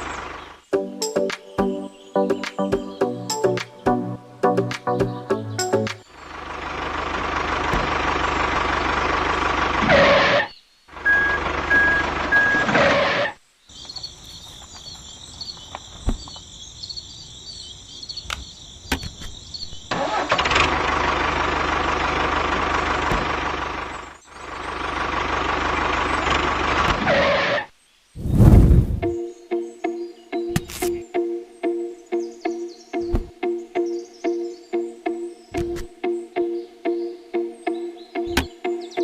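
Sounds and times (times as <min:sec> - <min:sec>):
engine-like running sound: 0:06.0 - 0:13.3, 0:19.9 - 0:27.6.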